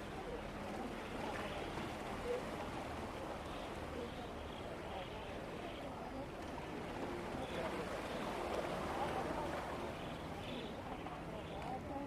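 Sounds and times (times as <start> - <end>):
distant people talking: 0.0 - 12.0.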